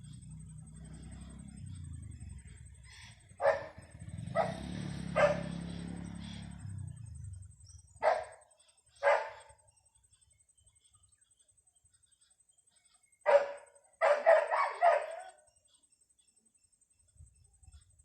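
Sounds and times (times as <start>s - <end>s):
dog barking: 3.4s - 5.7s, 8.0s - 9.6s, 13.2s - 15.5s.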